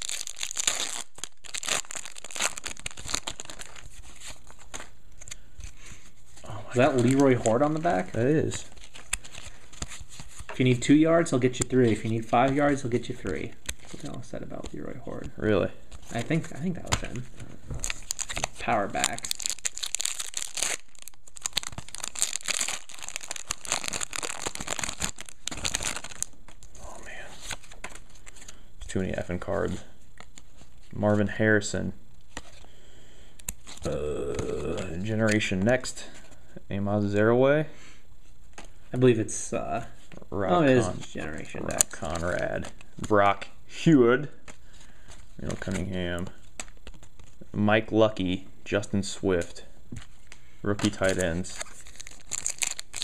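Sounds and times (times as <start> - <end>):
card pack wrappers crinkling: 0.0 - 5.4, 6.4 - 10.5, 17.8 - 28.6, 50.8 - 53.0.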